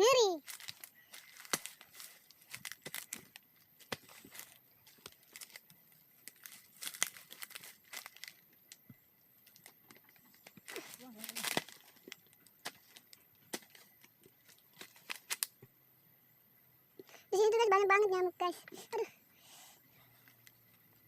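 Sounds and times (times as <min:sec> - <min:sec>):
faint crackling and rustling: 0:00.0 - 0:15.8.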